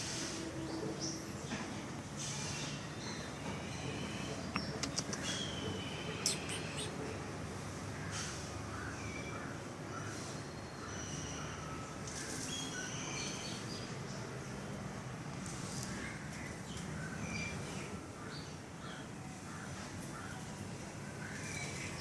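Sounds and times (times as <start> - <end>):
birds chirping: 0.4 - 22.0
crows cawing: 18.8 - 20.5.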